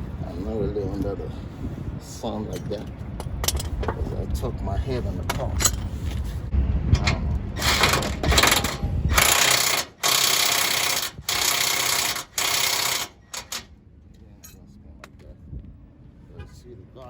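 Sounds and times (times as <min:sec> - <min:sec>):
impact wrench hammering: 0:07.6 - 0:13.7.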